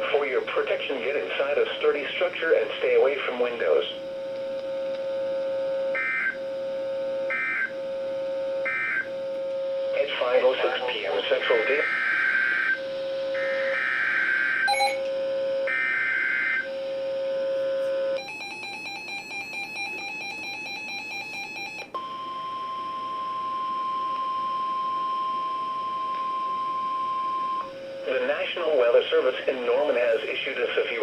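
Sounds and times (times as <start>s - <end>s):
single-pitch alarm tone: 14.7s - 15.2s.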